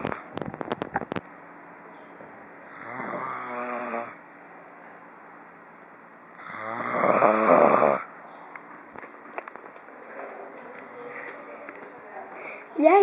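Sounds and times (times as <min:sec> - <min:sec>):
man snoring: 0:02.6 - 0:04.2, 0:06.4 - 0:08.1.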